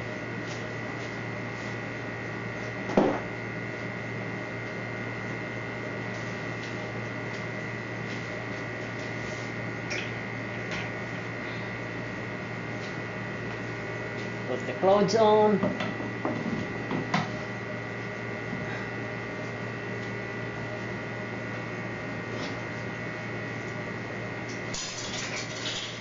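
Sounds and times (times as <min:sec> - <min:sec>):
electrical mains hum: 0:00.0 - 0:26.0.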